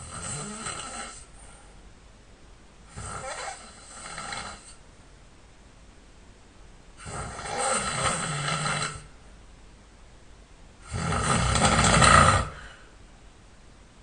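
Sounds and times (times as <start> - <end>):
person snoring: 0.0 - 1.4, 2.9 - 4.8, 7.0 - 9.1, 10.8 - 12.9
quiet breathing: 0.0 - 2.0, 2.8 - 4.9, 10.8 - 13.2.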